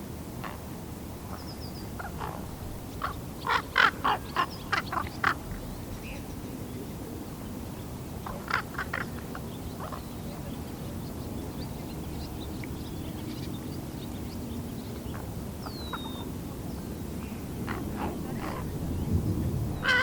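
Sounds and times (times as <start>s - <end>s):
young raven calling: 2.0s - 5.4s, 19.8s - 20.0s.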